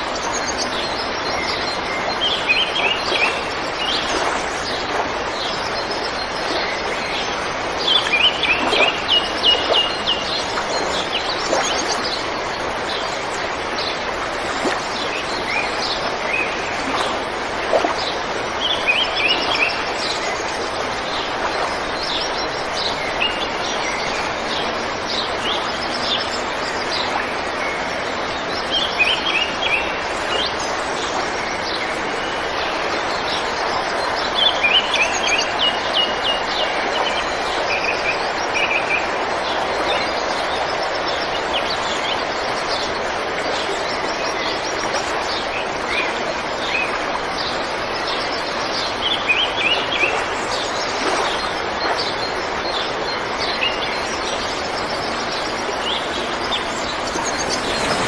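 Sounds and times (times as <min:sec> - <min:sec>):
birds chirping and twittering: 0:00.0 - 0:58.0
steady rushing background noise: 0:53.9 - 0:58.0.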